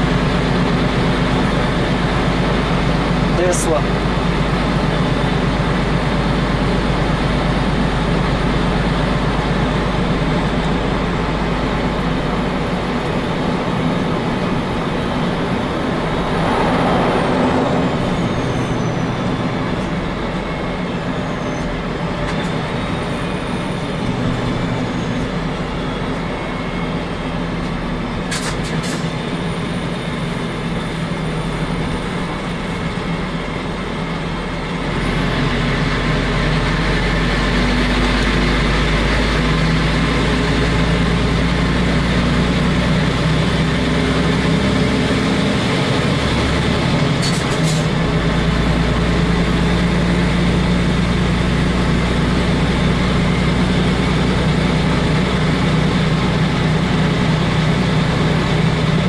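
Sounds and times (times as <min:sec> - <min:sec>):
diesel truck engine drone: 0:00.0 - 0:59.0.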